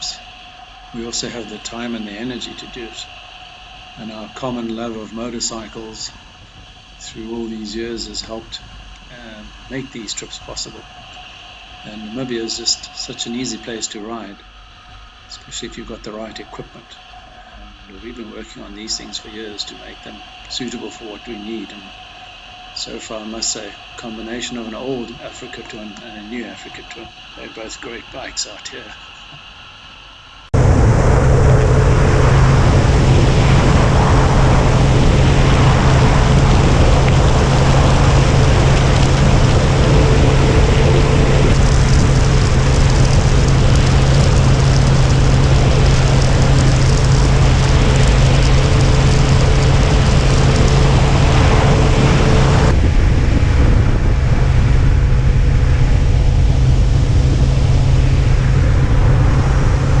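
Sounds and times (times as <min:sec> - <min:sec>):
wind rush on microphone: 0:00.0 - 0:13.8, 0:29.4 - 1:00.0.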